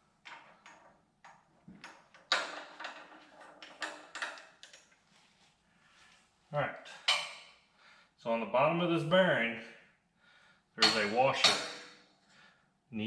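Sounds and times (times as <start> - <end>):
metal parts clinking and knocking: 0.1 - 5.0, 10.8 - 12.0.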